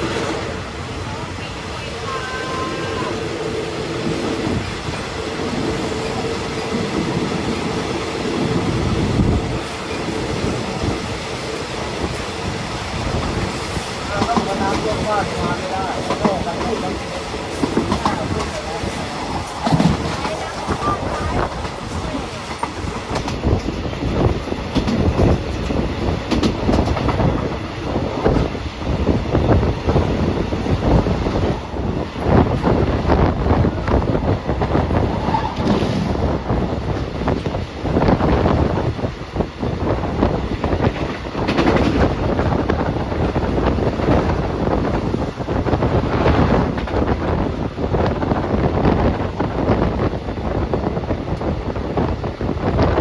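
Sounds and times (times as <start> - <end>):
train wheels rumbling: 0.0 - 53.0
wheels clattering and knocking: 13.1 - 27.5.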